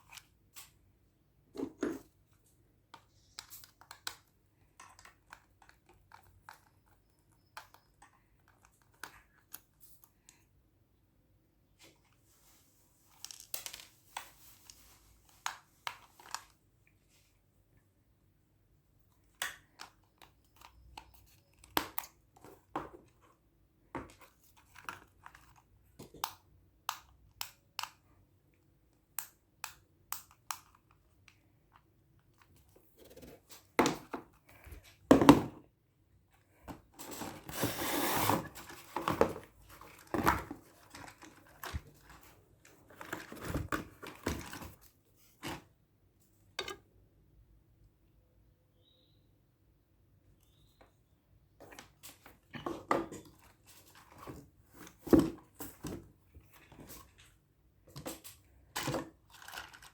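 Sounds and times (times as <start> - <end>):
packaging crinkling and tearing: 59.3 - 59.9.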